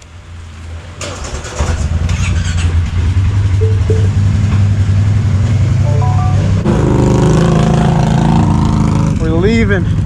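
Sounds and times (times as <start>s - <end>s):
engine humming: 2.0s - 7.9s.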